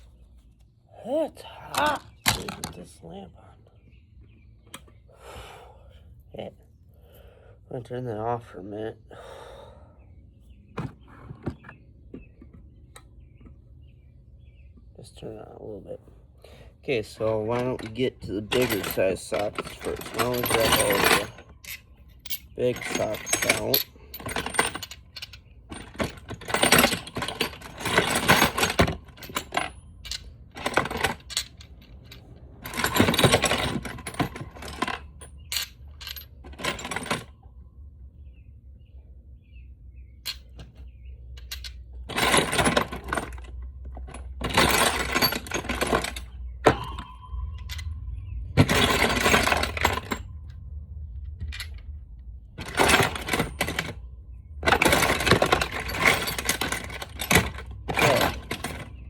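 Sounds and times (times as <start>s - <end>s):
metal sockets clattering: 1.8s - 2.9s, 17.2s - 37.4s, 40.2s - 50.6s, 52.6s - 54.0s, 54.6s - 59.0s
metal piece ringing: 44.8s - 50.7s.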